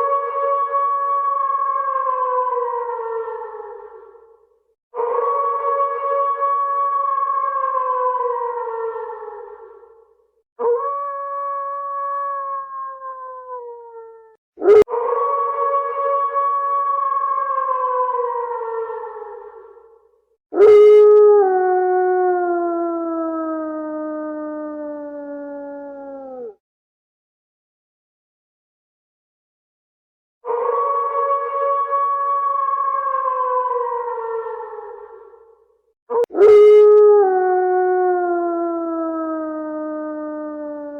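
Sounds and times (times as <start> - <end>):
wolf howling: 10.6 - 19.7, 20.6 - 26.6, 30.5 - 35.4, 36.1 - 40.9.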